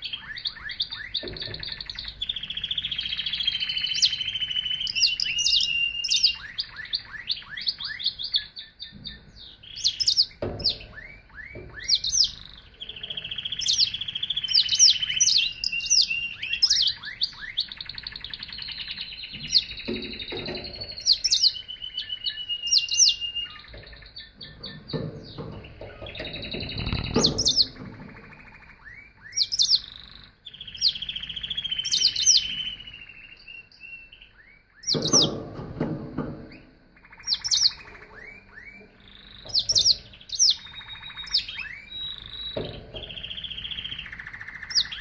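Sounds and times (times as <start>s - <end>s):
canary singing: 0.0s - 45.0s
low thumps: 23.6s - 28.3s.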